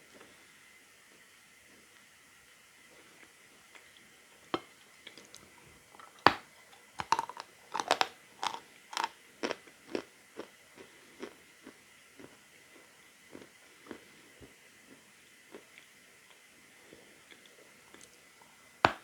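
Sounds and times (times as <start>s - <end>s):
person chewing with crisp crunches: 5.0s - 18.2s.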